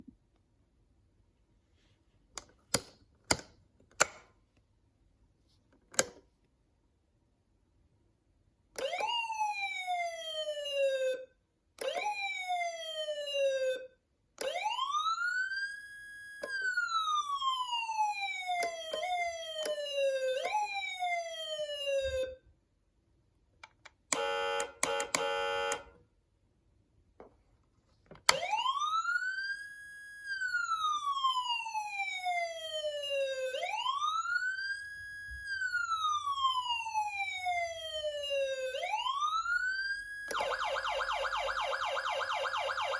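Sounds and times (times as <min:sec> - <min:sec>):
electronic siren wailing: 0:14.4 - 0:22.4, 0:28.3 - 0:42.9
siren chirps: 0:14.4 - 0:22.4, 0:28.3 - 0:42.9.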